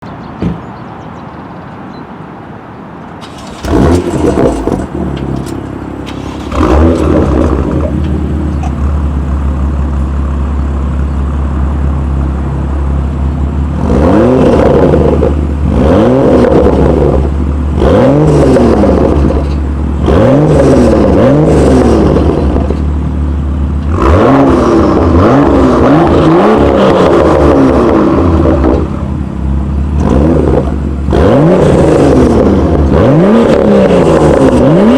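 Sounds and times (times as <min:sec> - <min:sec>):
car engine starting and revving: 0:03.2 - 0:09.2, 0:13.8 - 0:22.8, 0:23.8 - 0:34.9.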